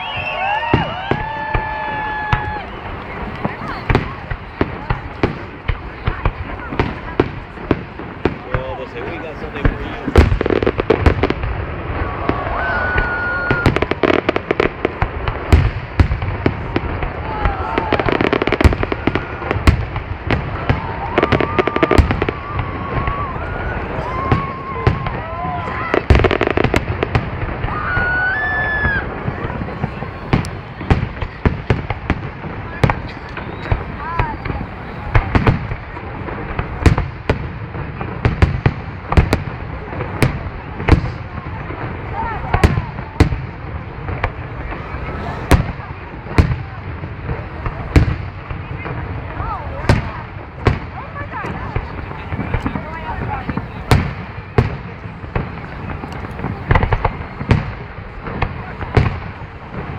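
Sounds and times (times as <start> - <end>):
high firework whistle: 0.0 - 4.2, 12.0 - 14.0, 32.8 - 35.3
fireworks bangs and crackles: 0.0 - 59.9.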